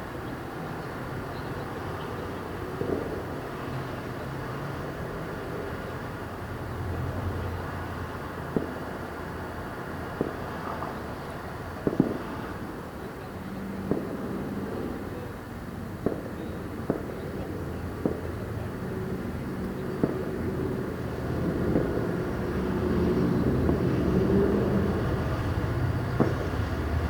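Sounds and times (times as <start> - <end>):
low traffic rumble: 0.0 - 27.0
distant fireworks bangs: 2.6 - 3.9, 8.5 - 9.0, 10.1 - 11.0, 11.8 - 12.6, 13.8 - 15.0, 16.0 - 18.8, 19.7 - 27.0
vehicle engine hum: 18.5 - 27.0.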